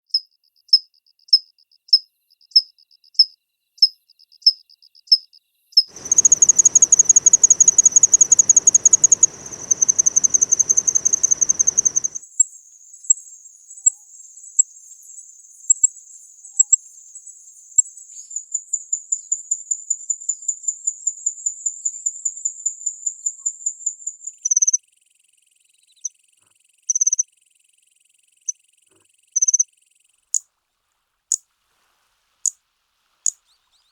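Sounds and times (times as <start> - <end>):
high cricket trill: 5.9 - 12.2
high metallic cricket chirps: 5.9 - 12.2.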